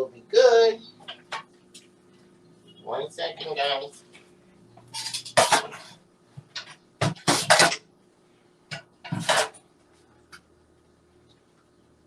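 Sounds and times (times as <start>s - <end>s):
utensils scraping and clinking: 4.8s - 6.0s, 9.1s - 9.6s.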